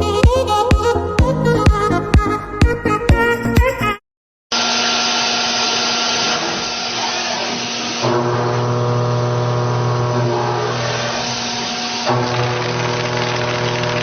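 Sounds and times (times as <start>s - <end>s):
cnc machine cutting: 4.6s - 14.0s.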